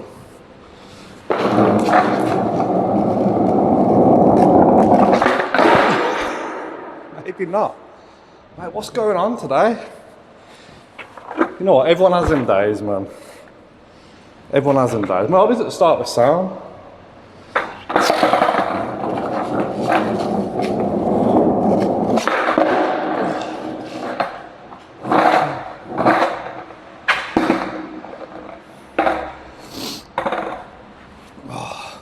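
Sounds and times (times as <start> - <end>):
skateboard wheels rolling on wet pavement: 0.9 - 7.0, 17.6 - 30.9
skateboard knocks and clatters: 1.3 - 7.0, 17.5 - 29.5, 30.1 - 30.9.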